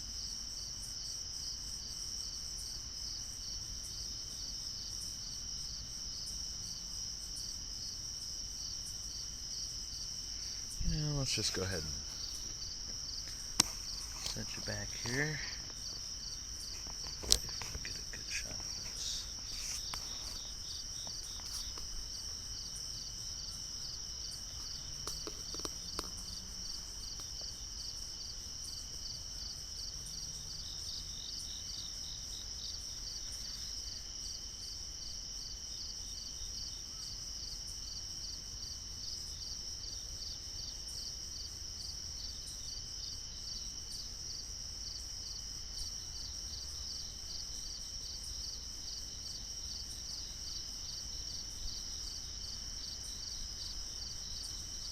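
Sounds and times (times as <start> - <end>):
crickets and insects chirping: 0.0 - 54.9.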